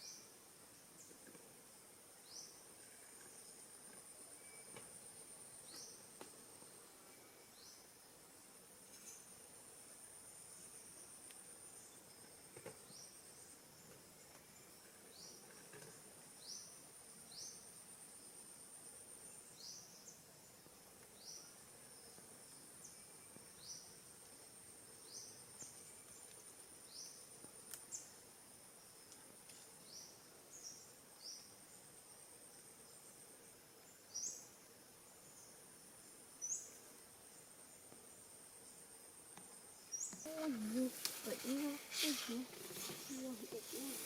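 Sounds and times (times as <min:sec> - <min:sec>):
high-pitched insect trill: 0:39.7 - 0:44.0.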